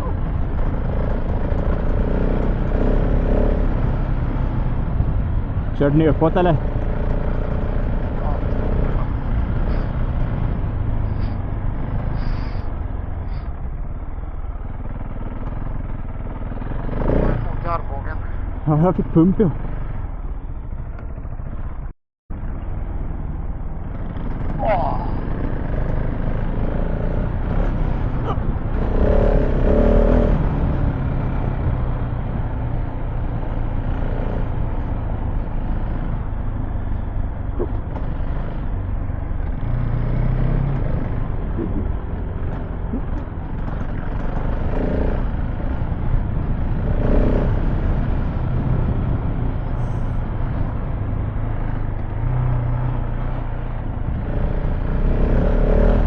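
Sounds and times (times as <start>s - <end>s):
motorcycle engine running: 0.0s - 56.0s
constant rush of noise: 3.6s - 56.0s.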